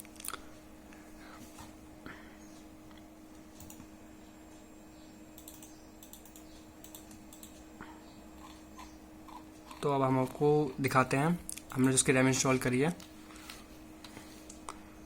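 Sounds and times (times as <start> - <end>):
steady low hum: 0.0 - 15.0
keyboard and mouse clicks: 5.4 - 7.6.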